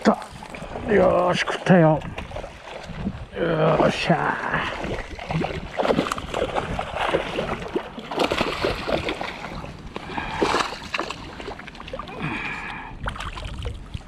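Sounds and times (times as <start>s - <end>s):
fish splashing in water: 3.7s - 14.0s.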